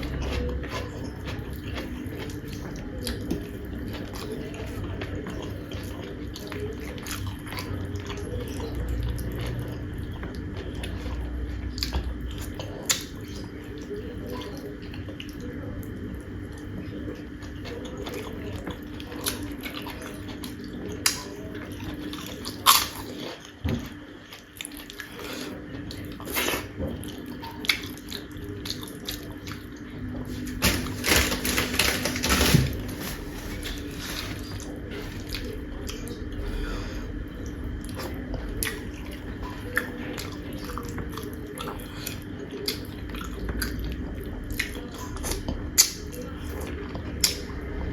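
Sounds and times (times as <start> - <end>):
wet chewing and mouth sounds: 0.0 - 47.6
faint steady hum: 0.0 - 47.9.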